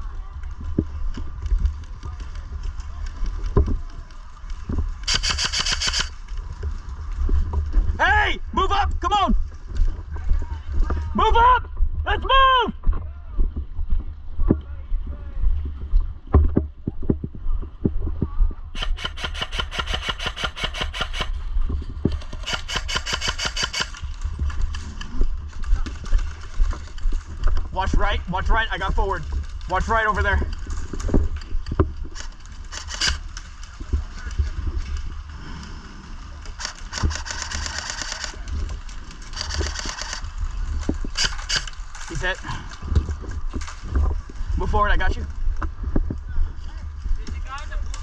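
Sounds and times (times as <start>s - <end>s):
wind and handling rumble: 0.0s - 48.0s
airsoft gun firing bursts: 5.0s - 6.2s, 18.8s - 21.4s, 22.1s - 24.1s, 32.2s - 33.2s, 36.6s - 38.4s, 39.4s - 40.3s, 41.1s - 41.7s.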